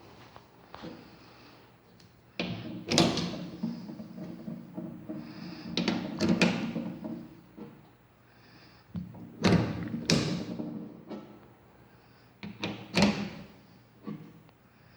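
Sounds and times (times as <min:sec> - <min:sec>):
hard objects clicking and knocking: 0:09.0 - 0:11.4.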